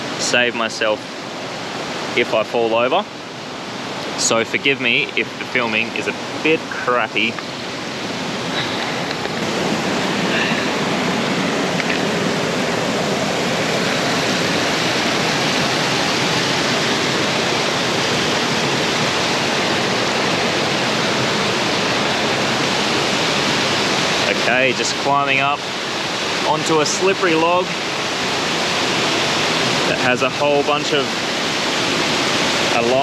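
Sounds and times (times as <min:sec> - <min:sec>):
small waterfall rushing: 0:00.0 - 0:33.0.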